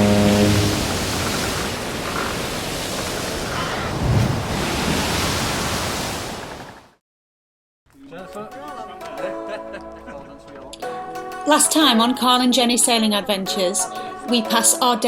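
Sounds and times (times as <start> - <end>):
wind rushing: 0.0 - 6.6
water rushing: 0.0 - 6.9.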